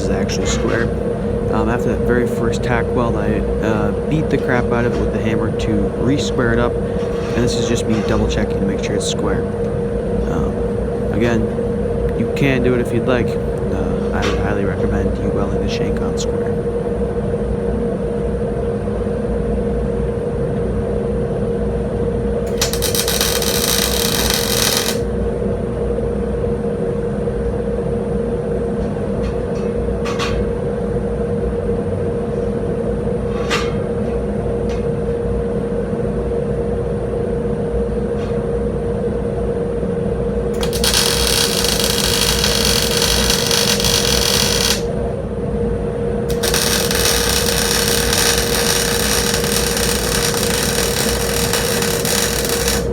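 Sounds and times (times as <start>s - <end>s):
steady machine hum: 0.0s - 30.0s, 30.6s - 52.9s
welder crackling hiss: 22.5s - 25.1s, 40.6s - 44.9s, 46.3s - 52.9s
short clicks: 40.6s - 44.9s.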